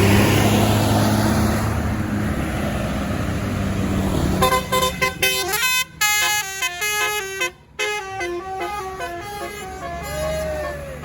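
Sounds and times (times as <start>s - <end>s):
bus engine running: 0.0s - 11.0s
musical horn playing a tune: 4.4s - 11.0s.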